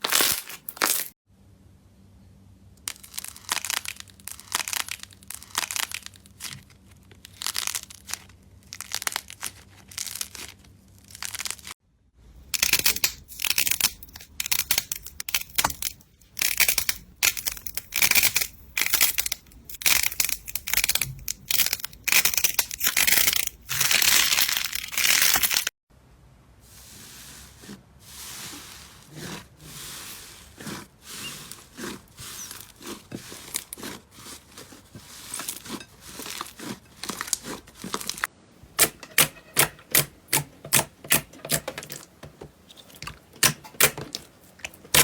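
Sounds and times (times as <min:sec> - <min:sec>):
slime squishing: 0:02.9 - 0:11.7, 0:26.7 - 0:45.0.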